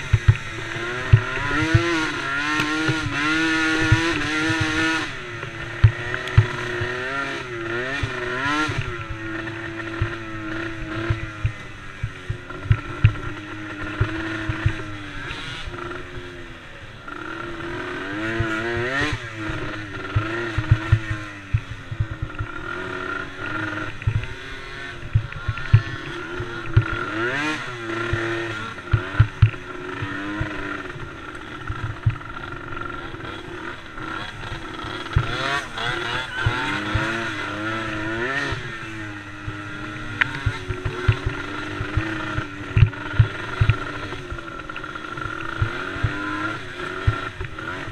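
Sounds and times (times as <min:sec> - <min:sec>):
small race engines revving: 0:00.0 - 0:47.9.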